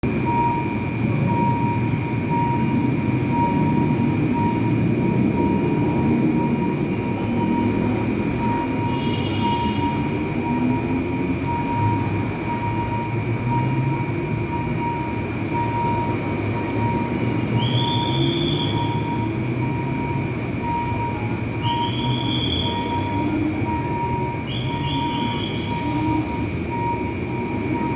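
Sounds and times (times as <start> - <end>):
train wheel squeals: 6.4 - 10.7, 16.7 - 19.2, 24.1 - 27.9.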